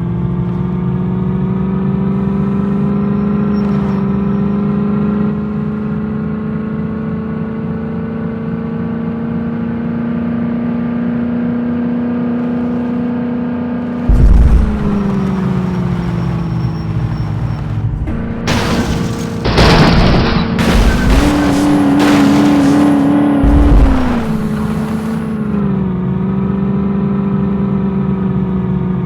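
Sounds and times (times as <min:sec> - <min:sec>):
jeep engine running: 0:12.2 - 0:26.4
loud low thump: 0:14.0 - 0:16.2, 0:17.9 - 0:24.9.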